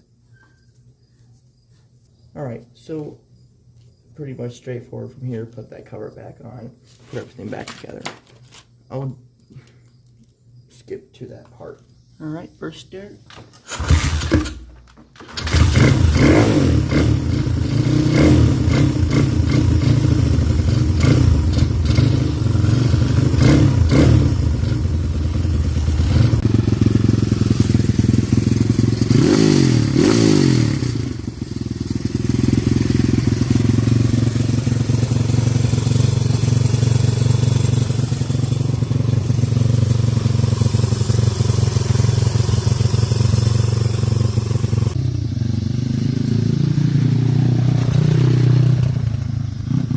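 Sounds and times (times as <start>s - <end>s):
motorbike engine running and revving: 15.3s - 49.9s.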